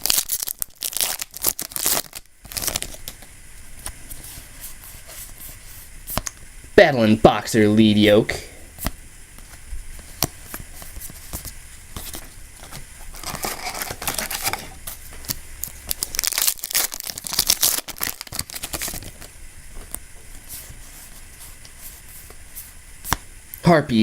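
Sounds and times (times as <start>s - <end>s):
foil wrapper tearing and crinkling: 0.0s - 4.2s, 11.0s - 19.3s.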